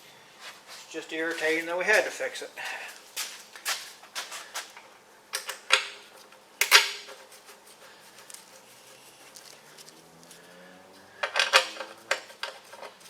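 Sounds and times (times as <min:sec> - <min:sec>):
hand tools clinking on metal: 0:11.2 - 0:13.0.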